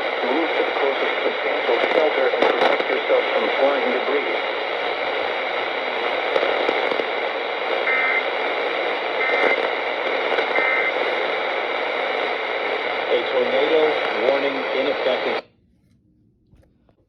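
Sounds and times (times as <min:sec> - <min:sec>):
radio static hiss: 0:00.0 - 0:15.5
two-tone data bursts: 0:00.5 - 0:13.3.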